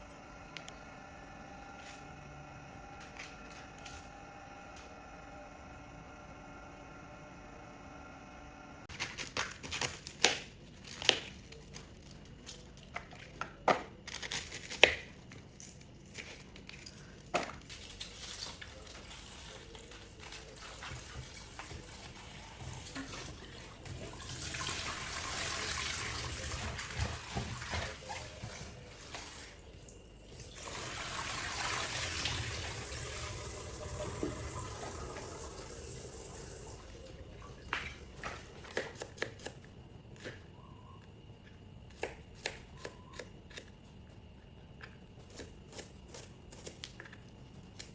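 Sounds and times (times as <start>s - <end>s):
water running: 17.8s - 38.2s.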